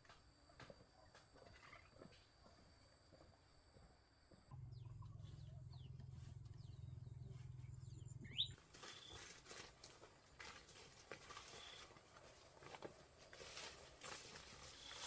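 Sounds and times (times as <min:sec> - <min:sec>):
faint bird chirps: 0:01.0 - 0:02.3, 0:04.5 - 0:09.3, 0:11.4 - 0:11.9
low steady hum: 0:04.4 - 0:10.3.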